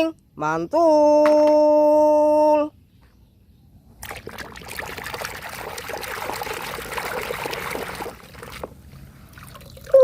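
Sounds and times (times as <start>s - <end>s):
water pouring and splashing: 4.0s - 10.0s.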